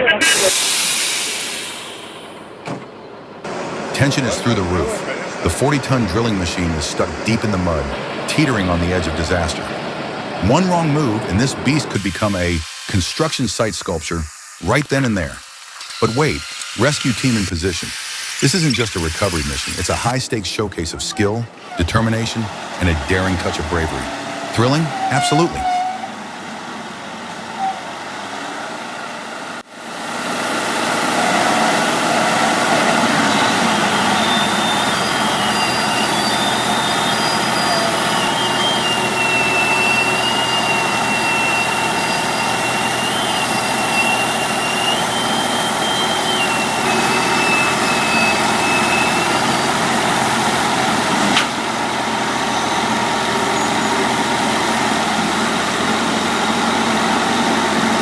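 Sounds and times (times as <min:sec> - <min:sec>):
diesel engines running: 0:03.5 - 0:20.2, 0:30.2 - 0:58.0
high wavering whine: 0:33.4 - 0:50.6.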